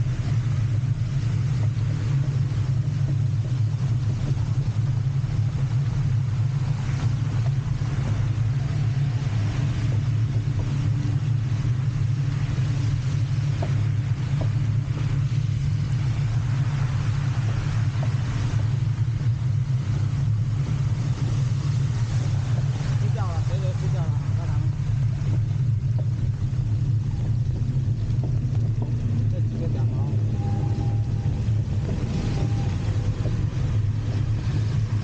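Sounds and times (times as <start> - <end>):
rain: 0.0 - 35.0
traffic rumble: 0.0 - 35.0
wet tyres hissing: 0.0 - 35.0.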